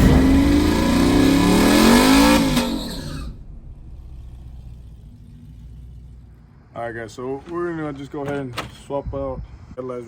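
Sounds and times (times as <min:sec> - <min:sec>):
engine revving: 0:00.0 - 0:06.7
low hum: 0:00.0 - 0:07.0.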